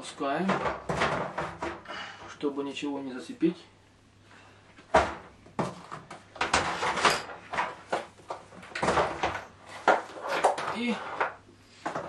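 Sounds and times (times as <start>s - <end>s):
knocks and clunks of metal drum: 0.4s - 2.0s.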